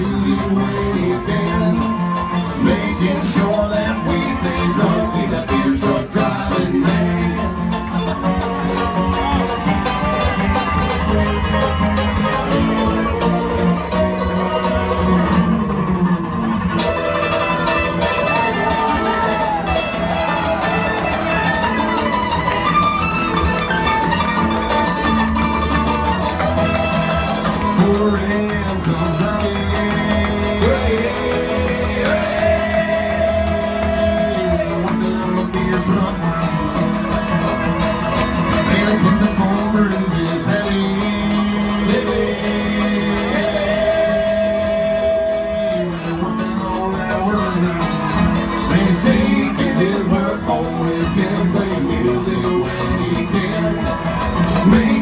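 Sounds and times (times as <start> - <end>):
fiddle: 0.0 - 55.0
guitar: 0.0 - 55.0
bass beat: 4.2 - 46.5.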